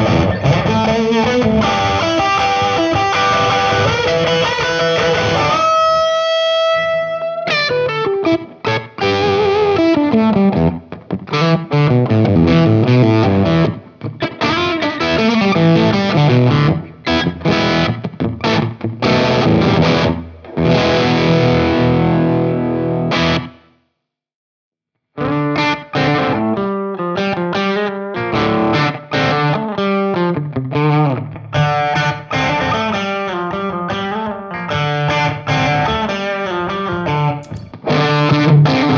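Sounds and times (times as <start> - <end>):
distorted electric guitar: 0.0 - 23.6, 25.2 - 38.9.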